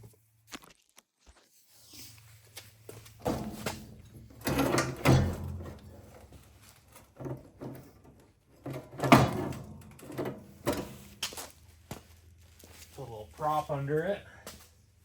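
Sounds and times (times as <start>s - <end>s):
metal clunks and scrapes: 3.2s - 11.4s.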